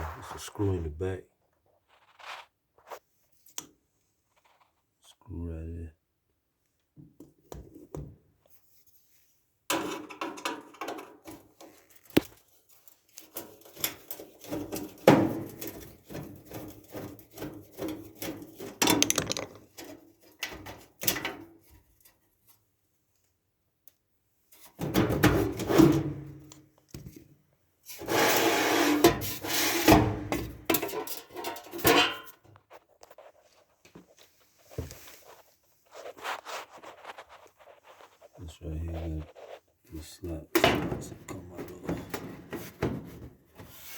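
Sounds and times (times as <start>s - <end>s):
scraping and rubbing: 0.0s - 0.8s, 1.8s - 3.0s, 32.6s - 39.8s.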